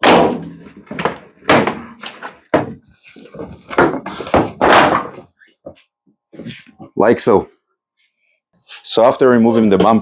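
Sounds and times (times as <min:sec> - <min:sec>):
sharp knocks and thuds: 0:00.0 - 0:05.3.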